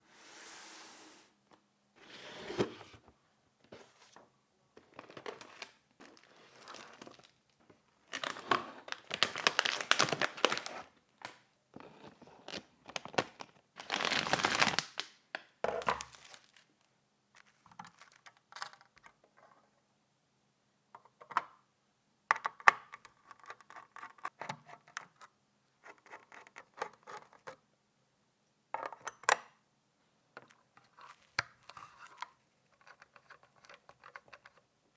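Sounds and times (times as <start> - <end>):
packaging crinkling and tearing: 4.9 - 7.4, 8.1 - 11.3, 12.4 - 15.2, 15.8 - 16.8.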